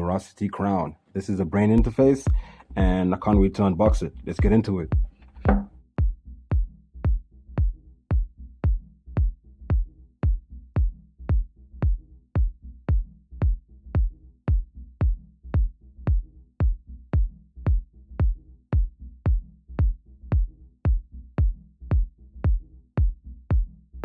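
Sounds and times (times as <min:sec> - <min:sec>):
drum-machine kick beat: 0:01.8 - 0:24.0.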